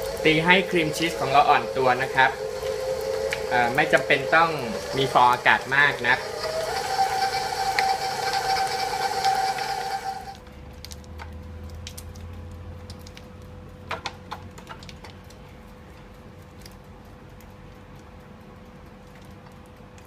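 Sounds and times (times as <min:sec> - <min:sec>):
stand mixer motor whine: 0:00.0 - 0:10.4.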